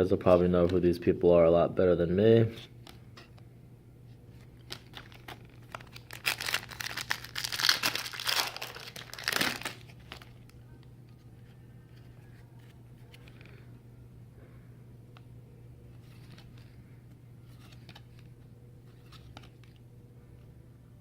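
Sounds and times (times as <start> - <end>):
wrapper tearing and crinkling: 4.6 - 10.5.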